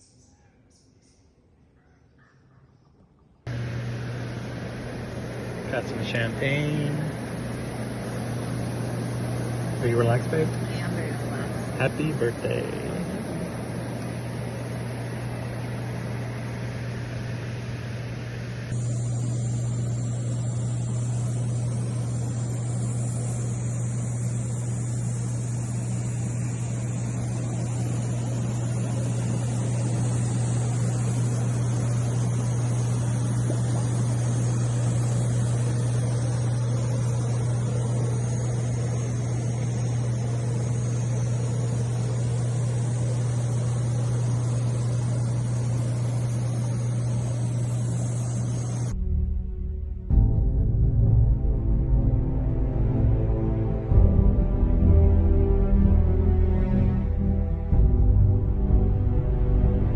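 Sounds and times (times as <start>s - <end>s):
jet pump humming: 3.4s - 59.9s.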